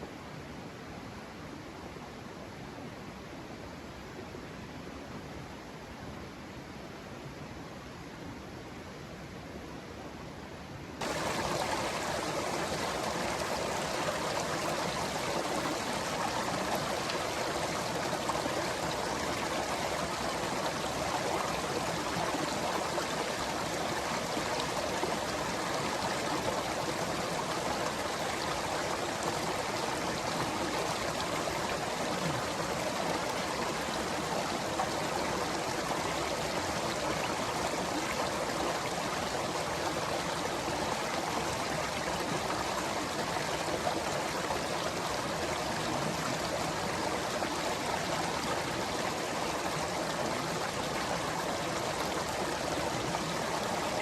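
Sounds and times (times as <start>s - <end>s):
flowing water rushing: 11.0s - 54.0s.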